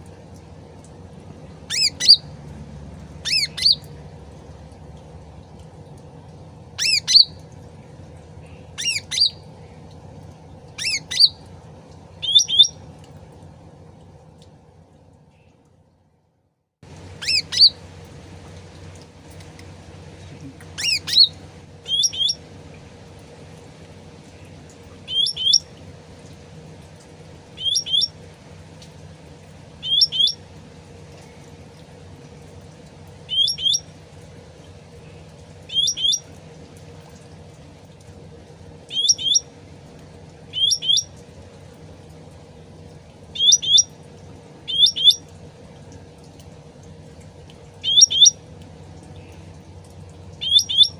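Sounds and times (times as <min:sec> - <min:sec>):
low background hum: 0:00.0 - 0:50.9
songbird chirping: 0:01.4 - 0:02.4, 0:03.1 - 0:04.5, 0:05.2 - 0:13.0, 0:17.0 - 0:18.0, 0:18.8 - 0:23.1, 0:24.2 - 0:26.2, 0:27.5 - 0:28.2, 0:29.8 - 0:30.5, 0:32.8 - 0:33.9, 0:34.9 - 0:36.4, 0:38.9 - 0:39.6, 0:40.4 - 0:41.2, 0:43.3 - 0:44.0, 0:44.6 - 0:45.3, 0:47.8 - 0:50.9.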